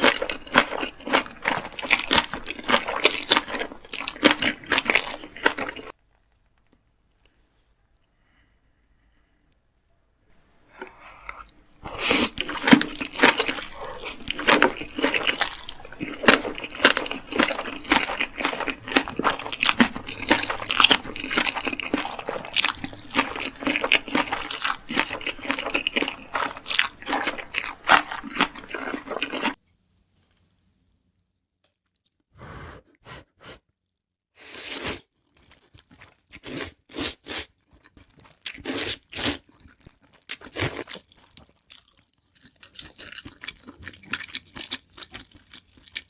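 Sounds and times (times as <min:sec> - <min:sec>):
person chewing crunchy food: 0:00.0 - 0:06.0, 0:10.8 - 0:29.6, 0:34.4 - 0:46.0.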